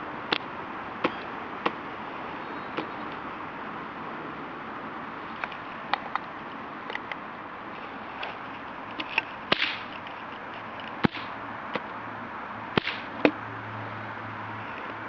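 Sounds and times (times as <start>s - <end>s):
stun gun spark snaps: 9.5s - 9.9s, 12.8s - 13.1s.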